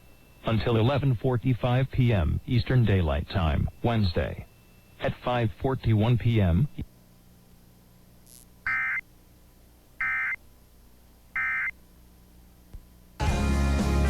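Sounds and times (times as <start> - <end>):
voice message: 0.4 - 6.8
buzzy digital squawks: 8.7 - 9.0, 10.0 - 10.4, 11.4 - 11.7
music: 13.2 - 14.0.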